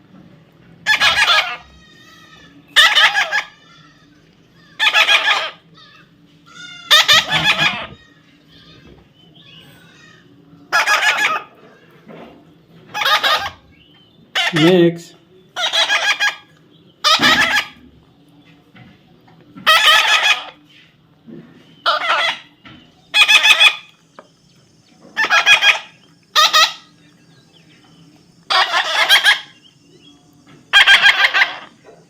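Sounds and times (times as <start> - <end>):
parrot squawking: 0.8 - 11.5, 12.9 - 13.7, 14.3 - 15.0, 15.6 - 17.8, 19.6 - 20.6, 21.8 - 22.5, 23.1 - 23.9, 25.2 - 26.9, 28.5 - 29.6, 30.7 - 31.8.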